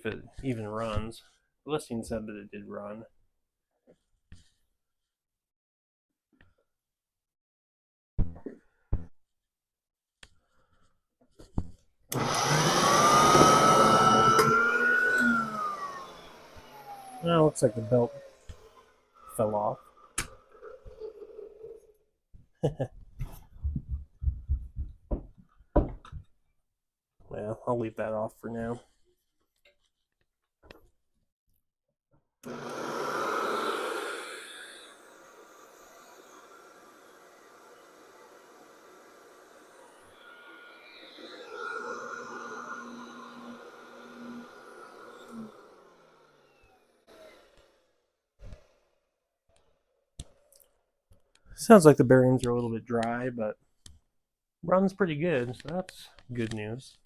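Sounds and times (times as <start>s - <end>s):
vacuum cleaner motor whine: 12.1s - 21.7s, 32.4s - 48.8s.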